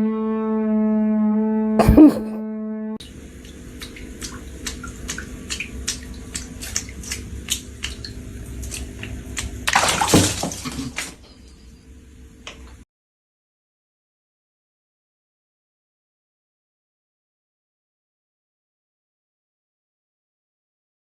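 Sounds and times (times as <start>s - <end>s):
water sloshing and splashing: 3.0s - 11.8s.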